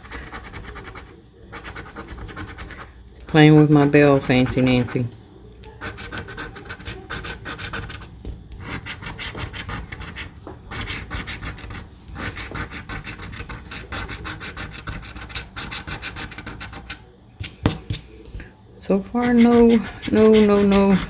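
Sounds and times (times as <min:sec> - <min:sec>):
scratching a lottery ticket: 0:00.0 - 0:18.2, 0:18.9 - 0:21.0.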